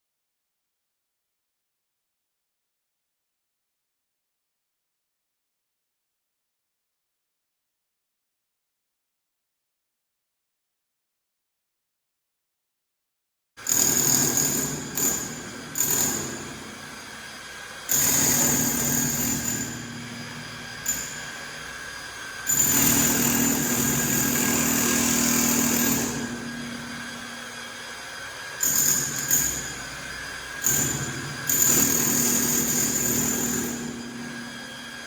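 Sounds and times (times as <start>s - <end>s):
power tool whining: 13.6s - 35.0s.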